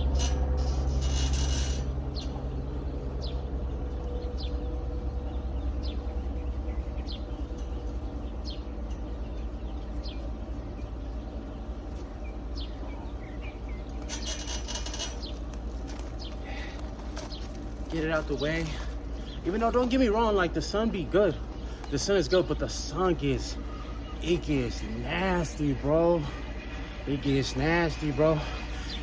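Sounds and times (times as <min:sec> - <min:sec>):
steady low rumble: 0:00.0 - 0:29.0
bird chirping: 0:01.0 - 0:29.0.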